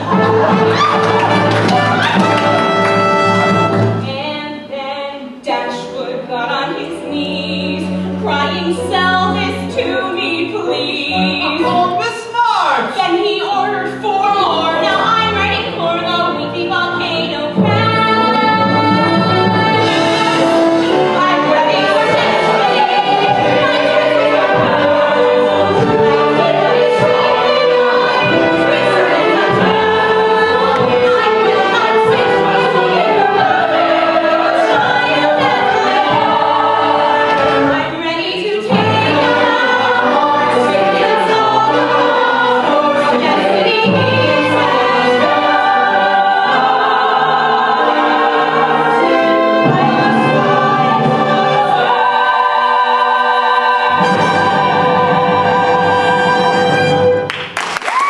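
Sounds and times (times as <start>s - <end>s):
ensemble singing in chorus: 0.0s - 4.2s, 17.6s - 57.2s
instrumental accompaniment: 0.0s - 57.6s.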